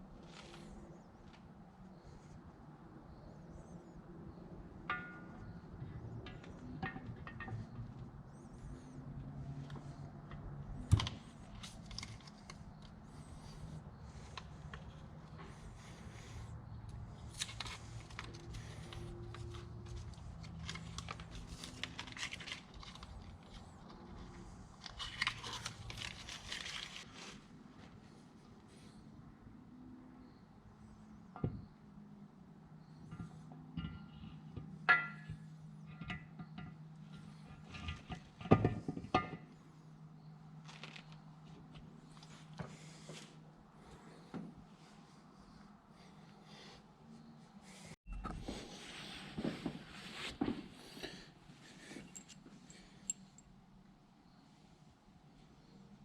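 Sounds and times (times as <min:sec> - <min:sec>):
tools knocking and clattering: 0:04.9 - 0:08.6, 0:33.0 - 0:39.6, 0:51.8 - 0:53.4
hands clicking and scraping on engine: 0:04.9 - 0:27.1.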